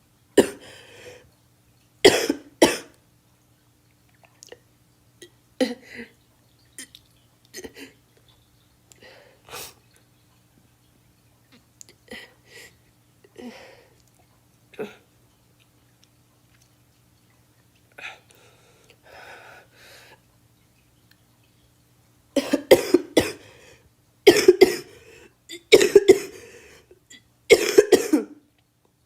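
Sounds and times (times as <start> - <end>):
girl coughing: 2.1 - 2.9, 22.4 - 23.4, 24.3 - 24.9, 25.5 - 26.4, 27.5 - 28.4.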